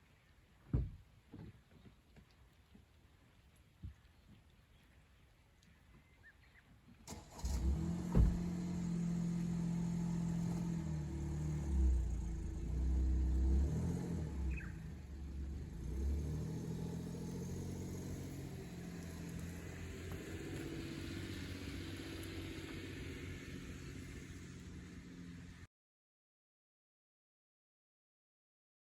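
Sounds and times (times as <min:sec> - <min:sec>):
car engine starting and running: 0:07.0 - 0:25.6.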